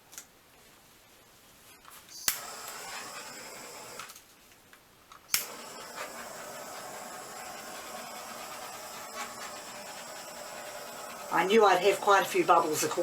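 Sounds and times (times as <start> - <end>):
torch clicking on: 2.2 - 4.3, 5.1 - 13.0
torch flame hissing: 2.3 - 4.1, 5.3 - 13.0.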